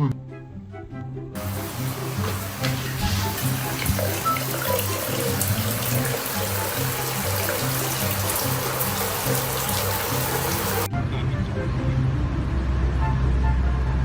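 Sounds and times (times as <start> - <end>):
constant hiss: 1.4 - 10.9.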